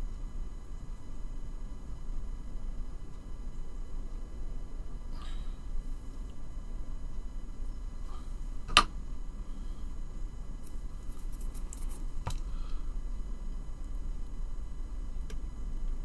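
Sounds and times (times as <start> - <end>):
steady low hum: 0.0 - 16.0
sharp click of parts: 8.7 - 8.9, 10.6 - 12.5.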